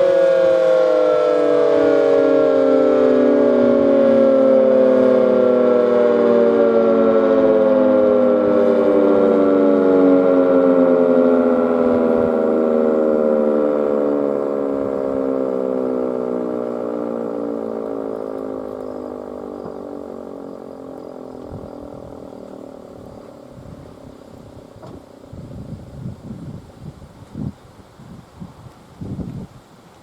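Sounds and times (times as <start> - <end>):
civil defense siren winding down: 0.0 - 29.4
wind gusts on microphone: 21.4 - 30.0.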